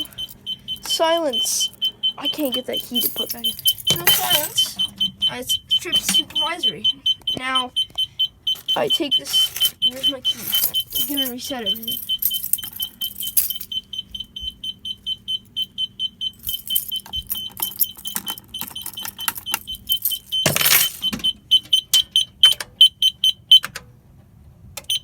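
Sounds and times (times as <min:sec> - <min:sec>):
keys jangling: 0:00.0 - 0:04.8, 0:08.5 - 0:13.8, 0:16.4 - 0:21.3
fire alarm beeping: 0:00.0 - 0:23.8, 0:24.8 - 0:25.0.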